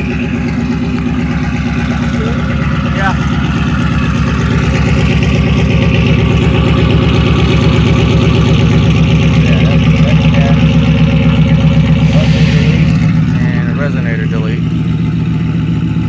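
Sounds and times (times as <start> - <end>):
loud pulsing exhaust note: 0.0 - 16.0
truck engine idling: 0.0 - 16.0.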